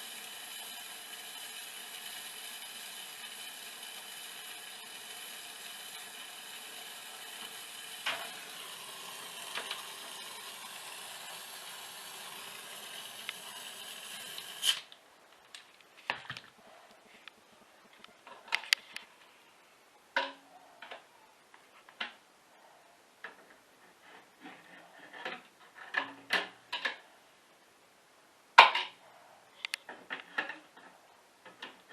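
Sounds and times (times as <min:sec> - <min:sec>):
small electric motor whining: 0:00.0 - 0:14.9.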